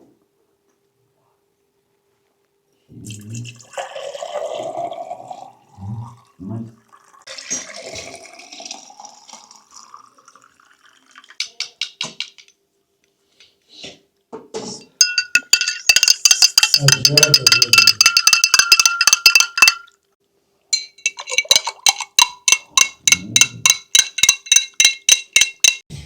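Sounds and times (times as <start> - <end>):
water splashing and pouring: 3.1 - 11.4
ringing metallic clinks: 15.0 - 19.9, 20.8 - 25.8.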